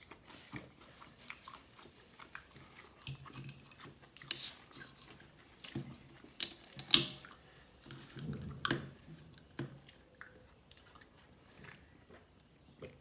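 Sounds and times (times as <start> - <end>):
person chewing food: 0.0 - 6.4, 9.1 - 13.0.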